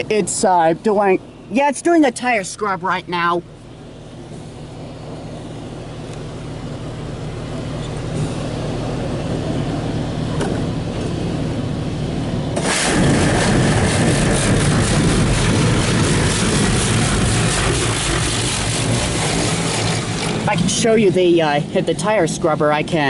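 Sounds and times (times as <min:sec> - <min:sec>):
water jets spraying against car: 0:12.5 - 0:23.0.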